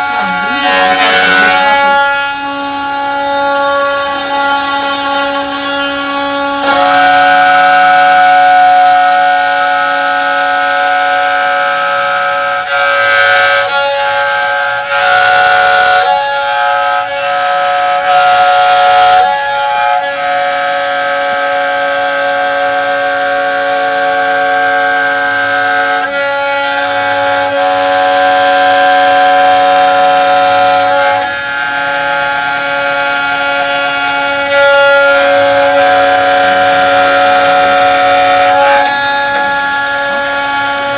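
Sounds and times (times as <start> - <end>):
router spindle cutting wood: 0.0 - 40.9.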